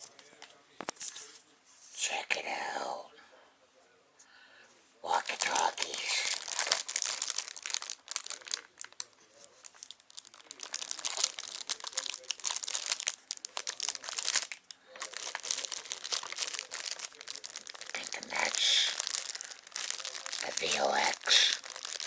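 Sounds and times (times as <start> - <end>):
packaging crinkling and rustling: 5.2 - 22.0.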